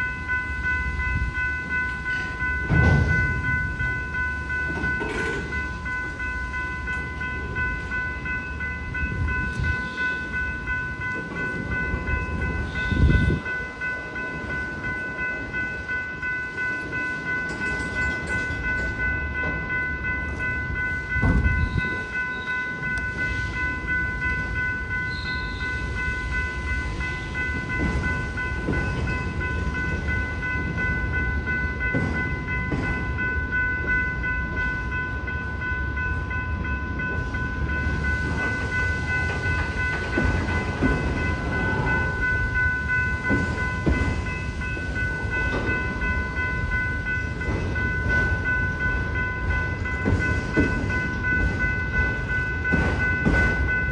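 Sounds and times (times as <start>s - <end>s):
freight train rumbling: 0.0s - 53.9s
railroad crossing bell ringing: 0.0s - 53.9s
train thumps: 2.6s - 3.9s, 21.1s - 22.0s, 27.4s - 31.0s, 31.8s - 34.0s, 38.3s - 46.0s, 47.2s - 53.9s.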